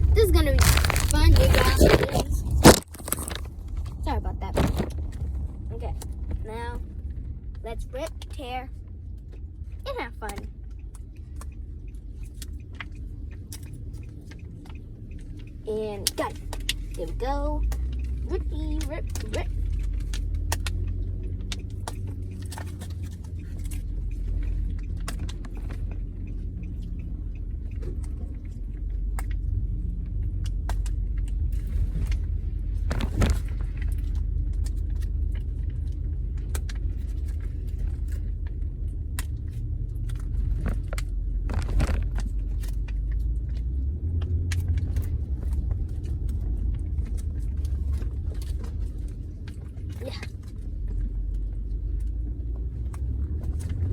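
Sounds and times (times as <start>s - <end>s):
plastic packaging crinkling: 0.0s - 5.2s, 32.8s - 35.9s, 40.0s - 42.8s
car cabin road rumble: 0.0s - 53.9s.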